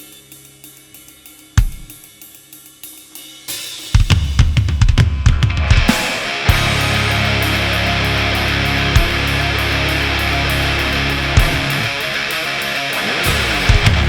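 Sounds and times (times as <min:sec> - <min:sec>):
hi-hat ticking: 0:00.0 - 0:04.1, 0:06.2 - 0:14.0
drum fill on snare and toms: 0:01.6 - 0:02.0, 0:03.7 - 0:07.1
rock band with distorted guitars: 0:03.9 - 0:14.0.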